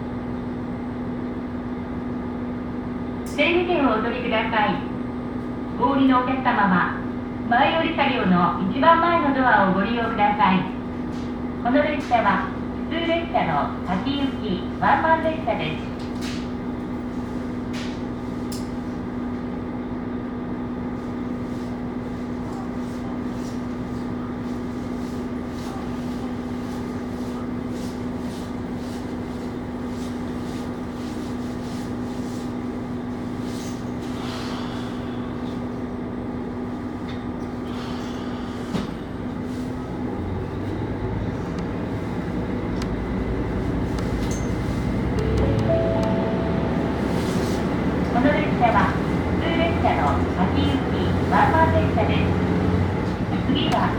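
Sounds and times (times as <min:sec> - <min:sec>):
railcar engine drone: 0:00.0 - 0:53.9
click: 0:42.8 - 0:43.0.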